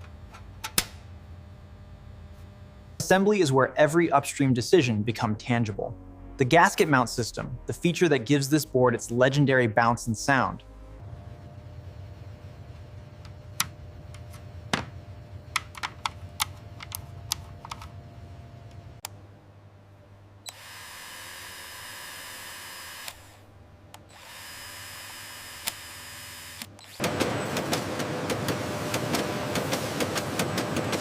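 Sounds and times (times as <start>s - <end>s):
low hum: 1.0s - 15.6s
small power tool running: 20.5s - 23.4s, 24.0s - 27.2s.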